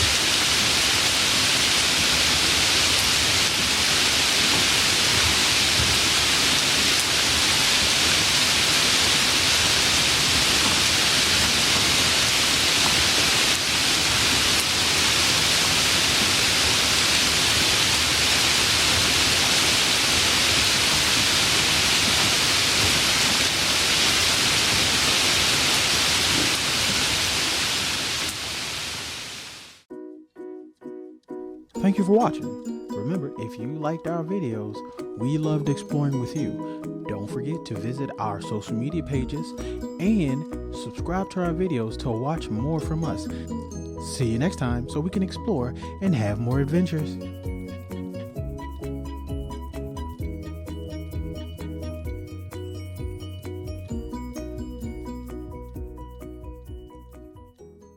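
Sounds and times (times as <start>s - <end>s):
steady rain: 0.0s - 29.9s.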